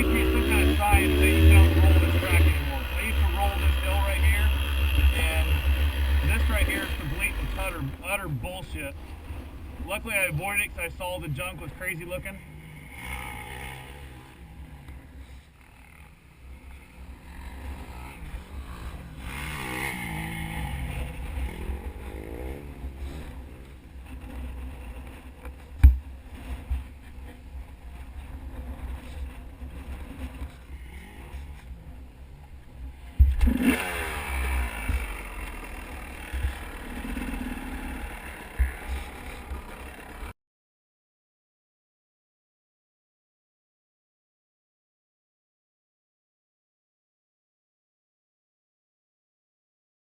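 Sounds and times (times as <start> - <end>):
dirt bike engine revving: 0.0 - 14.9, 15.7 - 25.4, 33.3 - 40.3.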